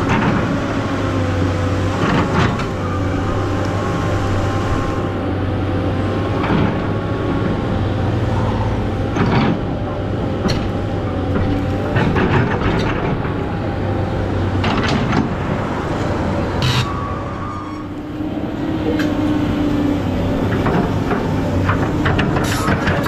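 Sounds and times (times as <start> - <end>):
excavator engine running: 0.0 - 23.0
knocks and clatters: 9.1 - 9.7, 10.4 - 13.4, 20.5 - 23.0.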